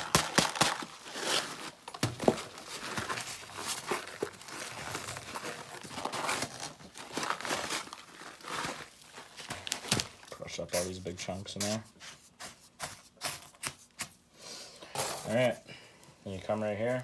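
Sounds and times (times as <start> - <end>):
powder crinkling and rustling: 0.0 - 14.2.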